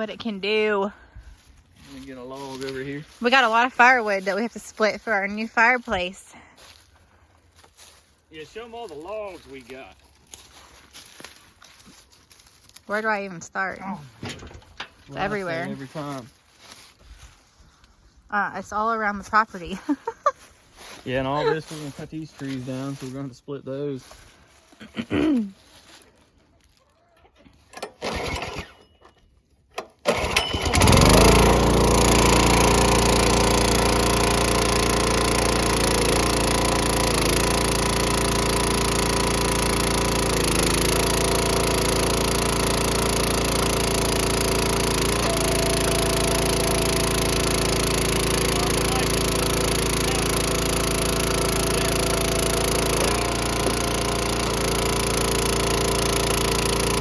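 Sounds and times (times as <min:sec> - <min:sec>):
small gas engine running: 0:00.0 - 0:05.3, 0:13.8 - 0:16.3, 0:21.1 - 0:21.9, 0:27.5 - 0:29.0, 0:29.8 - 0:57.0
pull starter cord pulls: 0:14.2 - 0:15.6, 0:27.2 - 0:57.0.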